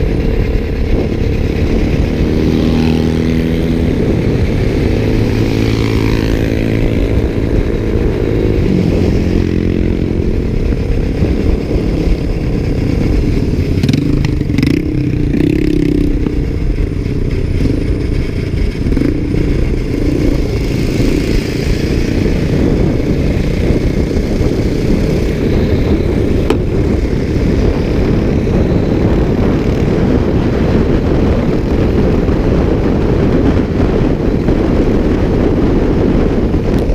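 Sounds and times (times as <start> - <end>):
motorcycle engine running: 0.0 - 36.9
wind rumble: 0.0 - 36.9.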